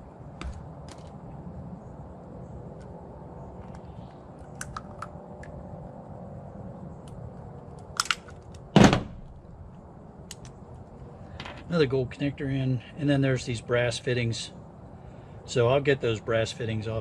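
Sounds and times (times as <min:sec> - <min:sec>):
loud thunk: 0:08.8 - 0:09.3.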